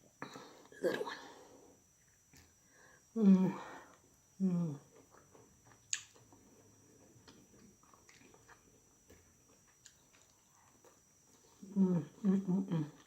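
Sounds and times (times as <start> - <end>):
eating clicks and chewing: 5.0 - 6.4.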